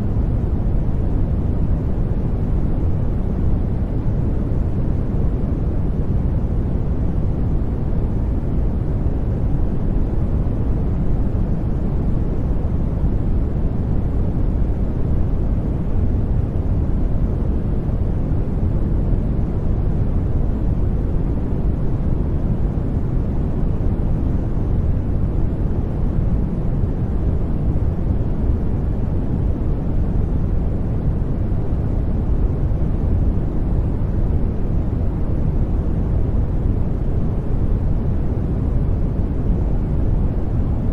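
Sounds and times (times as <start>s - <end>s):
deep low generated noise: 0.0s - 40.9s.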